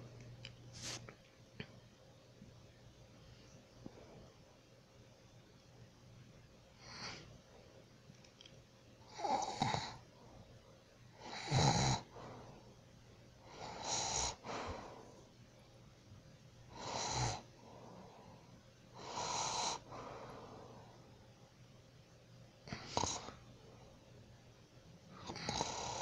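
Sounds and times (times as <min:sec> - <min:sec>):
person snoring: 0:11.2 - 0:12.2, 0:13.5 - 0:14.5, 0:25.2 - 0:26.0.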